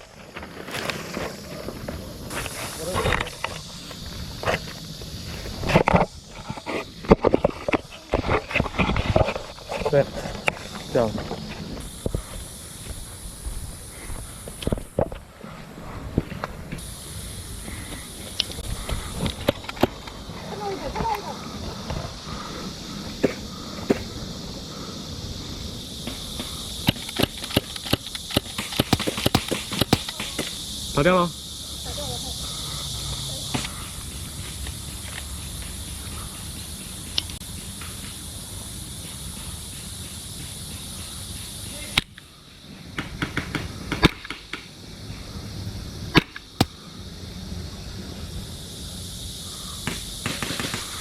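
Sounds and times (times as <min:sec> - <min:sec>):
steady outdoor hiss: 0:00.0 - 0:51.0
sharp snaps: 0:17.9 - 0:20.2, 0:26.0 - 0:30.6, 0:41.9 - 0:42.3, 0:43.0 - 0:44.7, 0:46.1 - 0:46.8.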